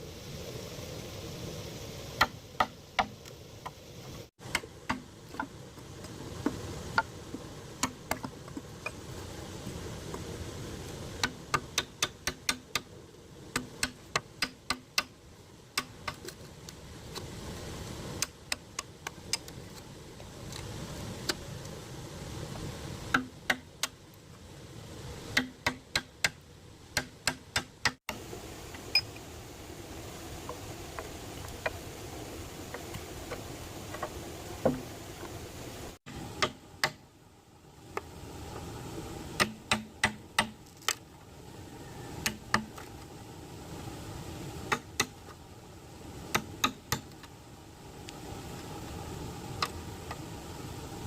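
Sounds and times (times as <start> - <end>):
tool striking bamboo: 2.2 - 3.2, 4.4 - 5.5, 7.8 - 9.0, 11.2 - 12.9, 13.5 - 15.1, 15.8 - 16.4, 23.1 - 24.0, 25.3 - 26.4, 27.0 - 28.0, 36.1 - 37.0, 39.4 - 41.0, 42.2 - 42.9, 44.7 - 45.2, 46.3 - 47.3.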